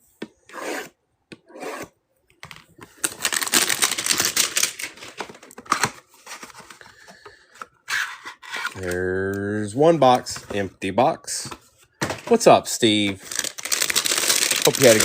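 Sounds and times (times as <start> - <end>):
packaging rustling: 2.9 - 7.2, 13.1 - 15.0
packaging crackling and ticking: 13.3 - 15.0.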